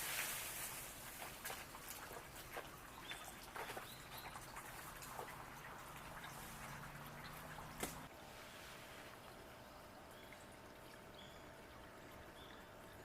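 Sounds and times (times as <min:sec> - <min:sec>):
faint steady hiss: 0:00.0 - 0:02.0
bird chirps: 0:02.9 - 0:04.5, 0:11.1 - 0:11.5.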